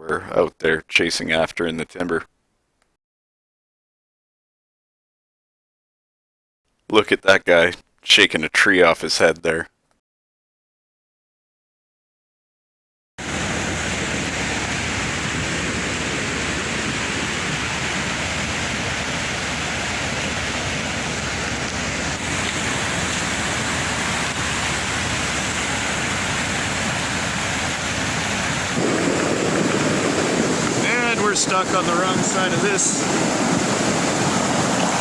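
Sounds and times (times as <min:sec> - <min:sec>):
floodwater torrent rushing: 0:13.2 - 0:35.0.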